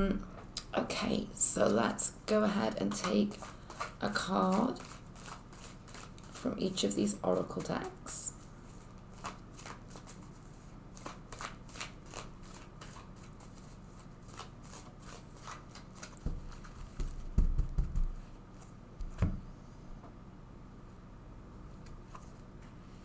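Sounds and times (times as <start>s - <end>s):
cards shuffling: 2.9s - 6.4s, 8.6s - 17.3s.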